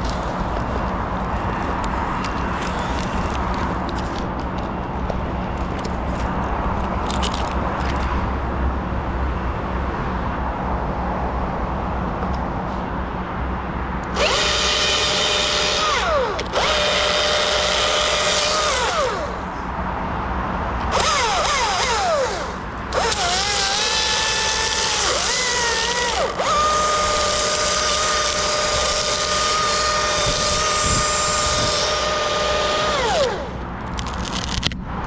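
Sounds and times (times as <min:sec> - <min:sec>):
chainsaw revving: 0:14.1 - 0:19.5, 0:20.9 - 0:34.6.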